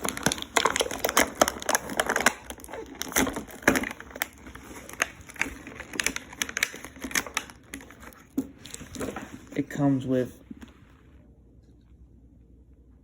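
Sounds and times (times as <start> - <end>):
packaging crinkling and rustling: 0.0 - 10.7.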